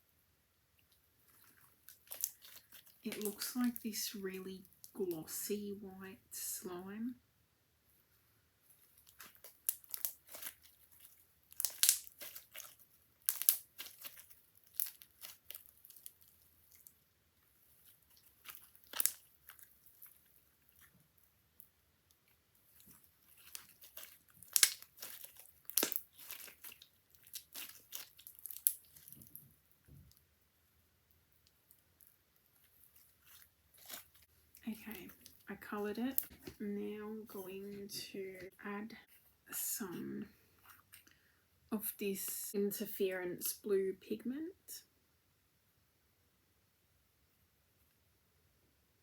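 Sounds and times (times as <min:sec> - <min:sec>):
crackling clicks and pops: 0:00.8 - 0:03.8, 0:08.9 - 0:17.0, 0:18.1 - 0:30.2
slime squished by hand: 0:01.2 - 0:03.8, 0:08.8 - 0:17.0, 0:17.7 - 0:21.7, 0:22.4 - 0:30.2, 0:31.4 - 0:36.6.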